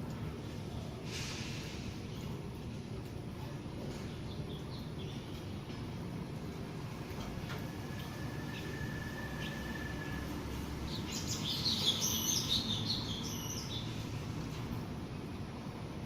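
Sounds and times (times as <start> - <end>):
thin steady whistle: 8.0 - 10.3
bird chirping: 8.2 - 14.0.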